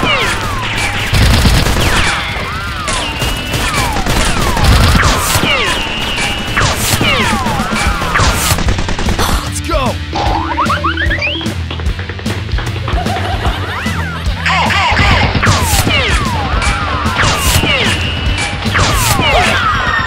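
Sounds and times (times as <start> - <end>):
gunfire sound effects: 0.0 - 9.5, 14.7 - 20.0
falling whistle: 2.8 - 7.8, 16.2 - 20.0.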